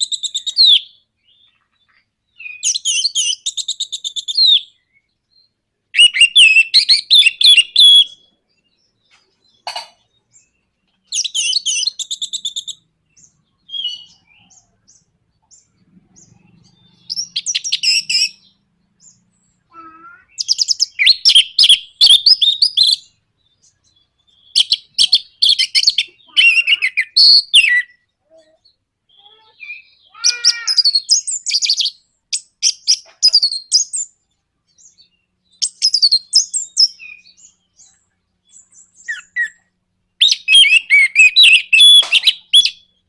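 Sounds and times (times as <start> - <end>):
bird chattering song: 0.0 - 43.0.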